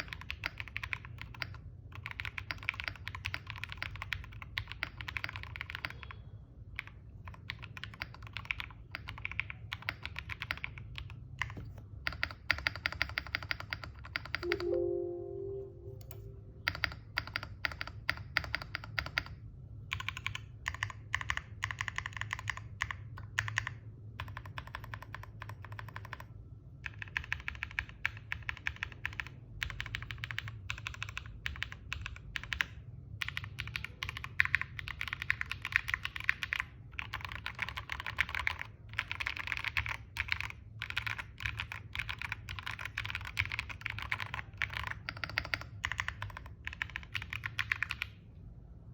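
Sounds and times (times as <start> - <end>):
mechanical keyboard typing: 0.0 - 14.9, 16.0 - 48.2
brief tone: 14.4 - 16.9.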